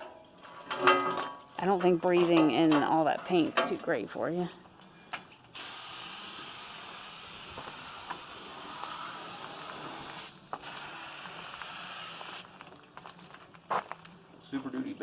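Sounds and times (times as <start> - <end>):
paint spray gun hissing: 5.5 - 12.6.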